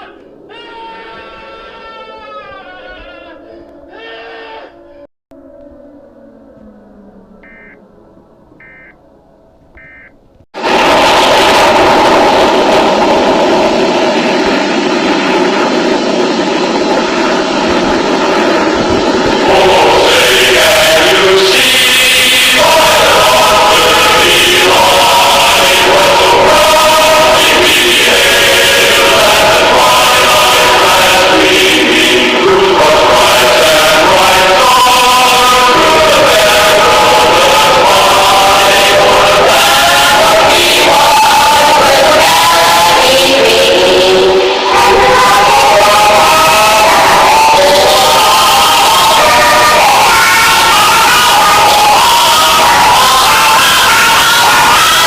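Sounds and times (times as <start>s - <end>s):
loud steady roaring noise: 0.0s - 55.0s
choir singing held notes: 7.4s - 7.8s, 8.6s - 9.0s, 9.8s - 55.0s.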